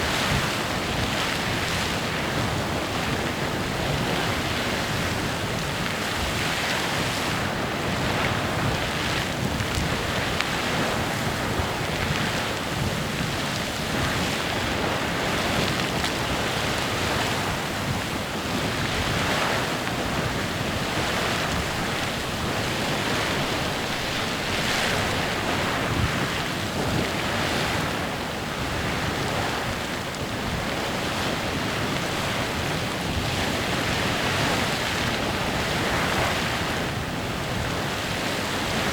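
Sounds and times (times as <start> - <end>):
geyser water and steam rushing: 0.0 - 38.9.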